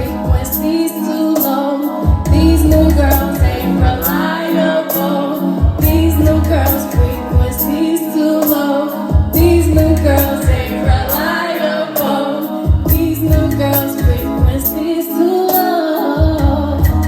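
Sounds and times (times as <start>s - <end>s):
woman singing: 0.0s - 17.0s
band playing bass and drums: 2.1s - 4.1s, 5.6s - 7.7s, 9.2s - 10.9s, 12.7s - 14.7s.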